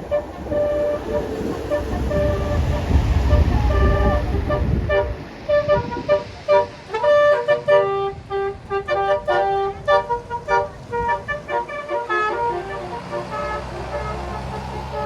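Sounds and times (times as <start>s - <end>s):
air horn playing a tune: 0.0s - 15.0s
bus engine rumbling: 0.0s - 15.0s.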